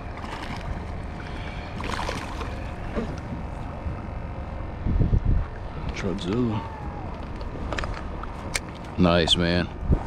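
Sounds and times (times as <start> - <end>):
water against a kayak: 0.0 - 10.0
splash: 1.8 - 2.6
wind on microphone: 4.7 - 6.0, 9.8 - 10.0.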